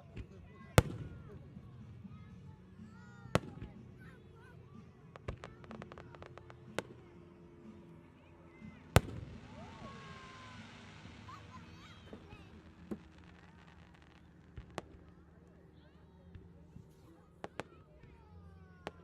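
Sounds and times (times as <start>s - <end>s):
firework hiss: 8.6s - 15.1s.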